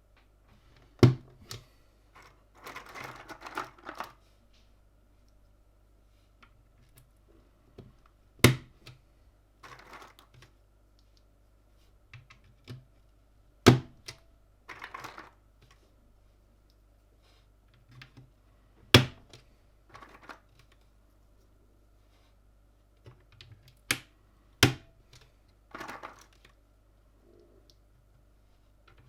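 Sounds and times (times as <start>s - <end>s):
faint small clicks: 10.4s - 11.3s.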